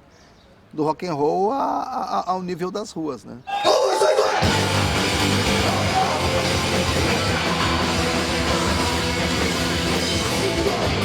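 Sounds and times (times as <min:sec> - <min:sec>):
rock music with distorted guitar: 0:04.4 - 0:11.0.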